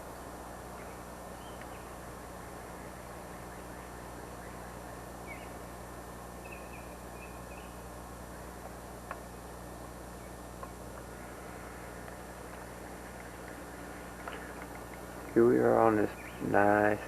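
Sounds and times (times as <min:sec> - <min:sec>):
steady hiss and hum: 0:00.0 - 0:17.0
faint bird chirps: 0:00.2 - 0:02.0, 0:02.7 - 0:05.7, 0:06.4 - 0:07.9, 0:13.9 - 0:17.0.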